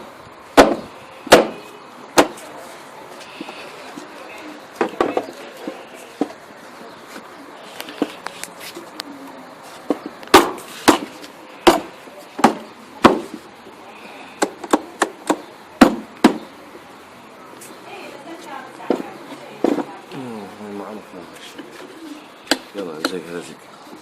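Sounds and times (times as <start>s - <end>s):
sharp knocks of hammering: 0.6s - 1.6s, 2.2s - 2.4s, 10.3s - 13.3s, 14.4s - 16.5s.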